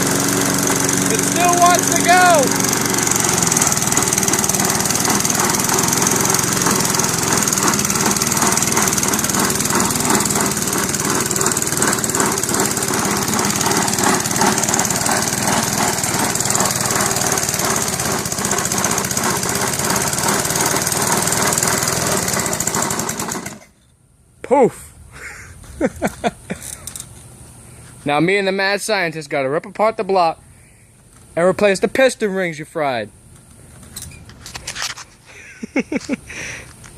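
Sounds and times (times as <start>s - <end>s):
lawnmower engine running: 0.0s - 23.8s.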